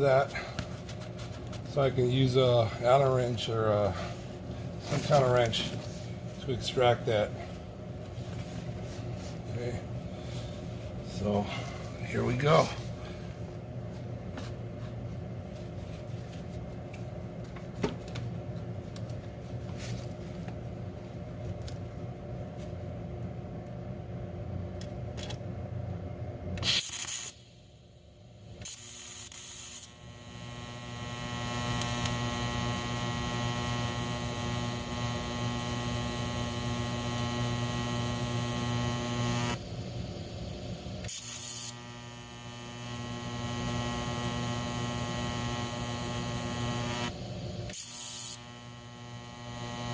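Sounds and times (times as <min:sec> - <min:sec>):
welding arc buzzing: 0:04.8 - 0:05.8, 0:26.6 - 0:27.6, 0:28.4 - 0:49.9
arc start crackle: 0:28.6 - 0:49.9.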